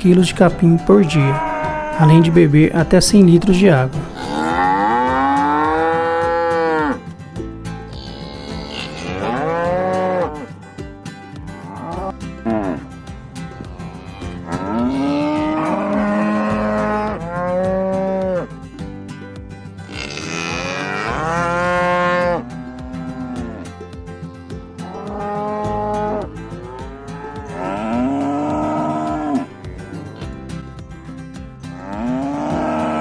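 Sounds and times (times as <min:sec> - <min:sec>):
cattle mooing: 0:00.5 - 0:02.6, 0:03.4 - 0:07.0, 0:07.9 - 0:10.5, 0:11.5 - 0:12.9, 0:13.6 - 0:18.5, 0:19.9 - 0:23.8, 0:24.8 - 0:30.3, 0:31.7 - 0:33.0.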